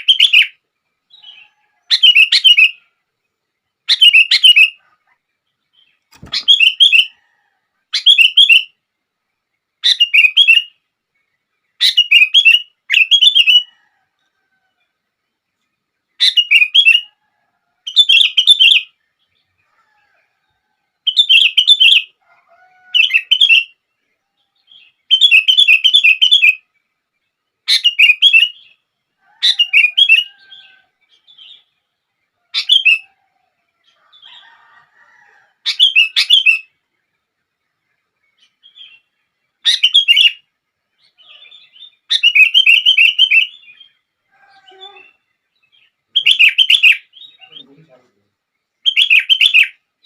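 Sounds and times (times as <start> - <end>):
bulbul singing: 0.0 - 2.9, 3.8 - 4.8, 5.7 - 7.2, 8.0 - 8.8, 9.8 - 10.8, 11.7 - 13.7, 16.2 - 17.2, 17.9 - 19.5, 21.0 - 22.2, 24.4 - 26.7, 27.6 - 28.8, 38.3 - 48.0, 48.6 - 49.9
faint soft bird calls: 0.0 - 50.0.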